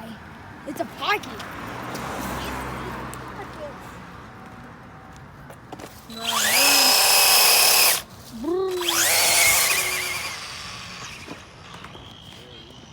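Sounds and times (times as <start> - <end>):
electric motor whining: 6.1 - 12.9.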